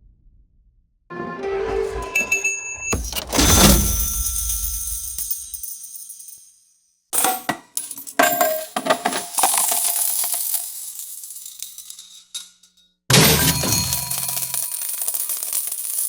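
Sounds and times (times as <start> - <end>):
ringing tone: 1.6 - 3.8
coins jingling: 2.2 - 12.8, 13.4 - 16.0.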